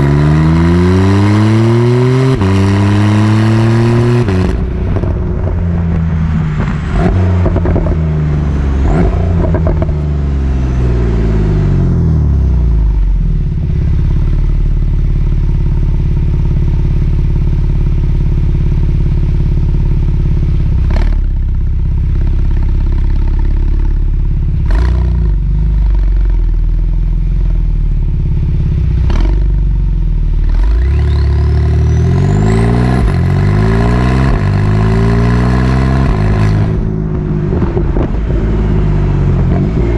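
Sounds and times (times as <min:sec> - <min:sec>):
sports car engine idling and revving: 0:00.0 - 0:39.9
exhaust cracks: 0:04.0 - 0:11.0, 0:32.8 - 0:39.9.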